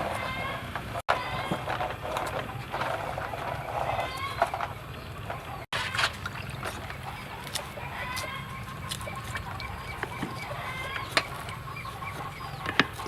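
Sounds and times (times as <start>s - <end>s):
chickens clucking: 0.0s - 13.0s.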